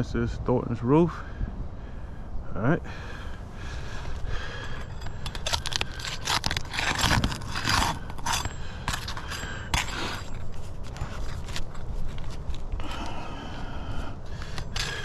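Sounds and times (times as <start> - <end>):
scraping on roof shingles: 5.2 - 12.4.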